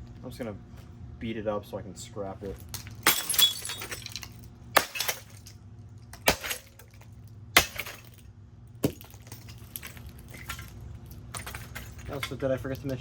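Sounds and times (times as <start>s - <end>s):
loose metal parts rattling: 8.8s - 13.0s.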